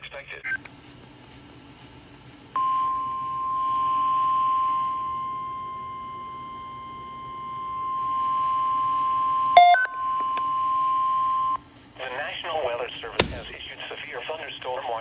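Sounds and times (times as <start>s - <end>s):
steady high alert beep: 9.6s - 10.1s.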